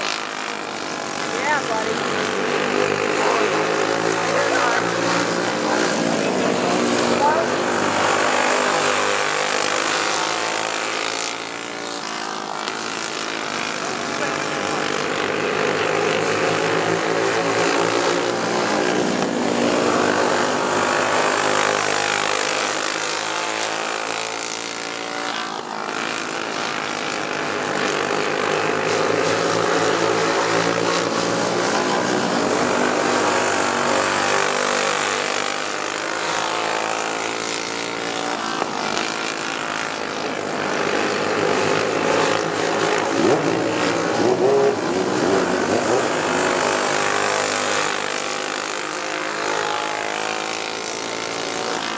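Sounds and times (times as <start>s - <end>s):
go-kart engines running hard: 0.0s - 51.9s.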